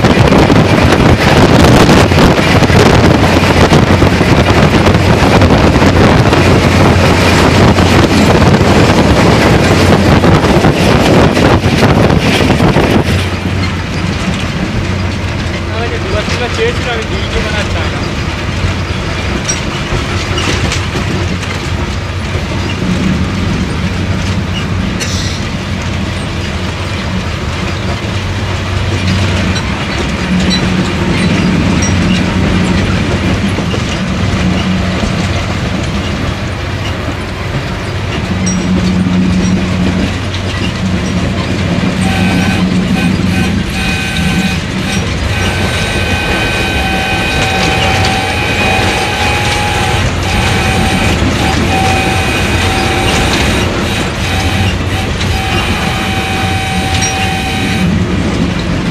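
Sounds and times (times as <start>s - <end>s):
train carriages rumbling and clattering: 0.0s - 58.9s
steady high tone: 42.0s - 57.9s.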